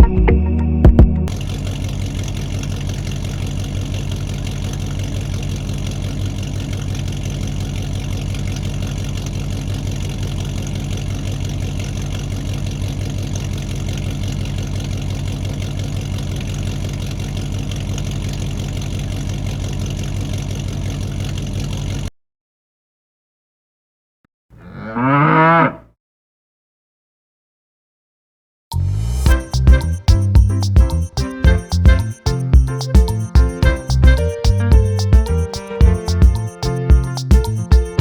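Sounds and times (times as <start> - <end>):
engine idling with chug: 1.3 - 22.1, 29.3 - 38.0.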